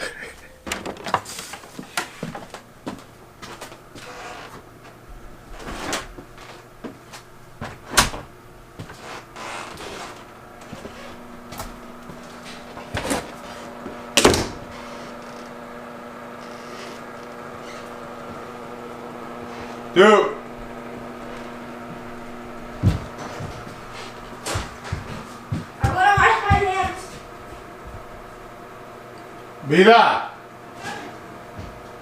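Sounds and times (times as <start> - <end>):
appliance hum: 0.0 - 32.0
doors and cupboards knocking: 24.5 - 27.0.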